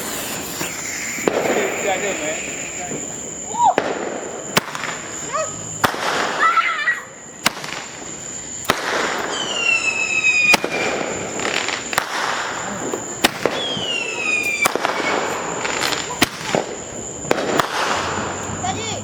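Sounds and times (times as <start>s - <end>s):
fireworks bangs: 0.0s - 19.0s
fireworks crackling: 0.0s - 19.0s
whistling firework: 0.0s - 19.0s.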